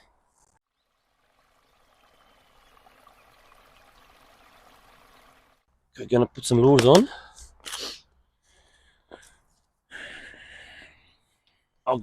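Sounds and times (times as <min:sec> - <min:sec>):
rush of river water: 0:01.1 - 0:05.6.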